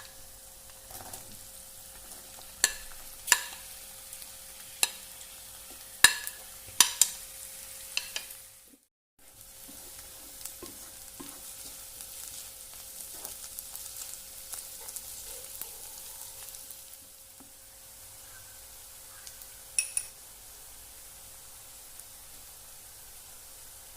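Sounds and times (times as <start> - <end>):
prawns sizzling in a pan: 0.0 - 23.9
spoon knocking against pan: 2.6 - 3.6, 5.7 - 7.2, 7.9 - 8.3, 19.8 - 20.1.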